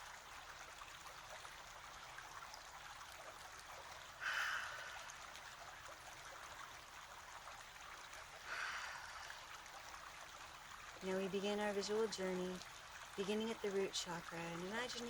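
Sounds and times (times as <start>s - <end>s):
person breathing deeply: 4.2s - 5.2s, 8.5s - 9.5s.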